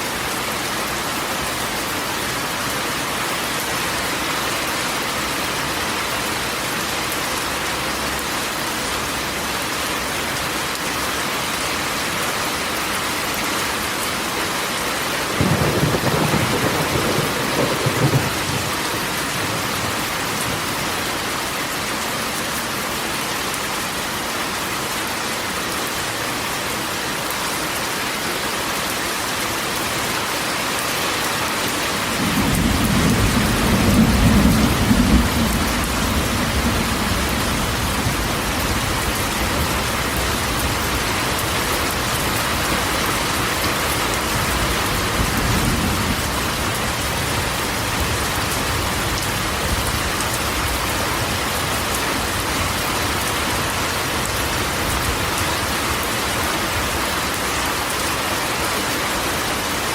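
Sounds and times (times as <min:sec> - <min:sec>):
rain drumming on a metal roof: 0:00.0 - 0:59.9
low rumble of thunder: 0:15.4 - 0:20.8, 0:32.1 - 0:41.4, 0:44.4 - 0:50.1.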